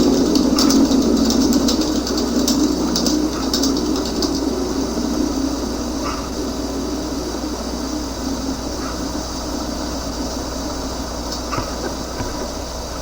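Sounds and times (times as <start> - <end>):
hiss: 4.5 - 13.0.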